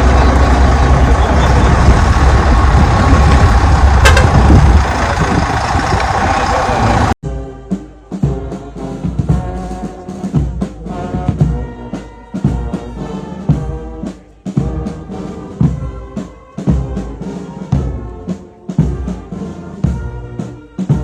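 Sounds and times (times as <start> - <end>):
heavy drum beat: 2.7 - 5.3, 7.6 - 21.0
brass band playing a slow march: 4.0 - 4.8, 7.3 - 21.0.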